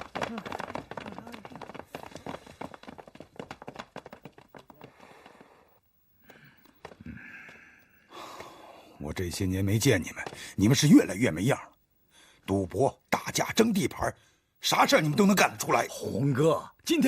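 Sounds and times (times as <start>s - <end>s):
footsteps of men walking: 0.0s - 8.6s, 9.3s - 10.9s.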